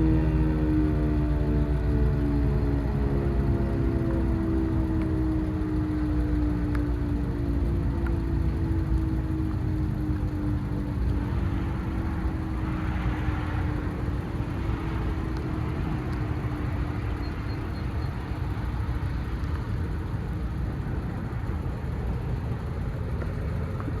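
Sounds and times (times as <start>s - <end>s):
siren winding down: 0.0s - 19.2s
low rumble of street noise: 0.0s - 24.0s.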